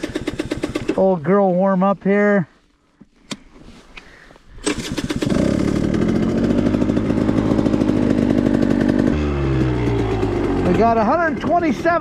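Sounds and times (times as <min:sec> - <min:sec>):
motorcycle engine idling: 0:00.0 - 0:01.1, 0:04.7 - 0:12.0.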